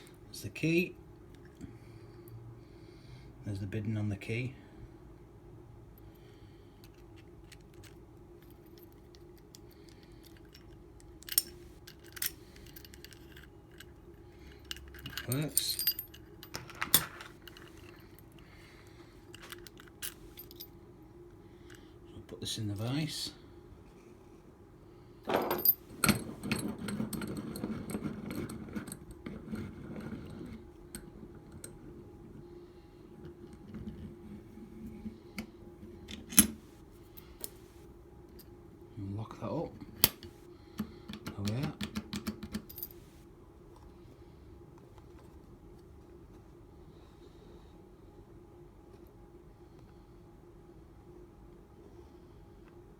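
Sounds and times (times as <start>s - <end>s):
padlock and key rattling: 6.9s - 18.3s, 25.3s - 29.1s.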